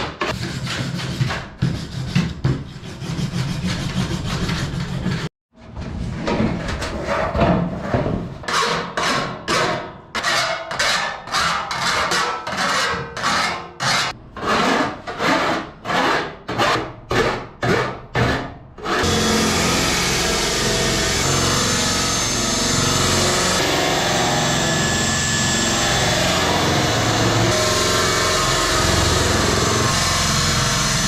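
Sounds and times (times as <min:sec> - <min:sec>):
hand file scraping aluminum: 0:00.3 - 0:05.3.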